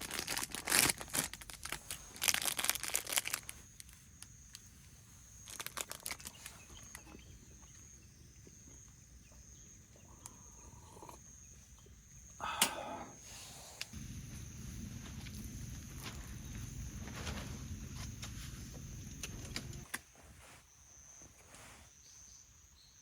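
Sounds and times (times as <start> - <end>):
plastic packaging crinkling: 0.0 - 4.6, 5.4 - 7.1
faint high whine: 12.4 - 19.9.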